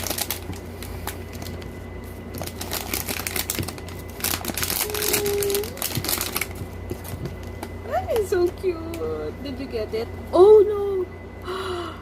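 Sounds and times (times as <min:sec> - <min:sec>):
plastic packaging crinkling: 0:00.0 - 0:09.0.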